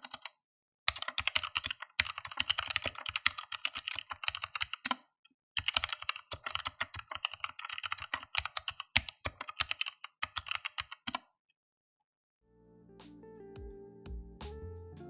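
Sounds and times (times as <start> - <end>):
typing on mechanical keyboard: 0.0 - 0.3, 0.9 - 5.0, 5.6 - 11.3.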